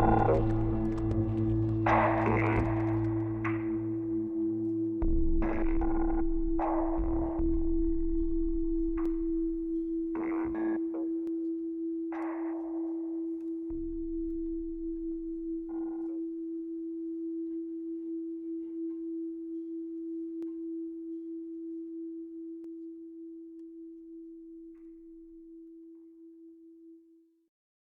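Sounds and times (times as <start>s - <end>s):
electronic music: 0.0s - 11.2s
sustained low pure tone: 0.0s - 25.6s.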